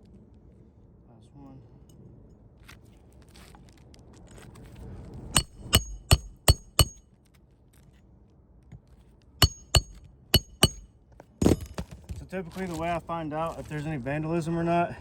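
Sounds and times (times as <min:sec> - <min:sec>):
hammer striking nail: 0:05.4 - 0:07.0, 0:09.4 - 0:10.8.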